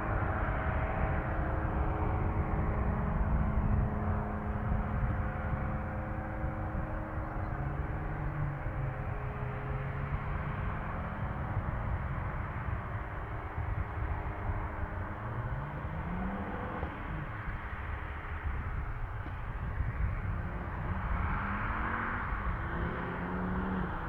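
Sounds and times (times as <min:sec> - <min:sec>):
aircraft engines rumbling: 0:00.0 - 0:24.0.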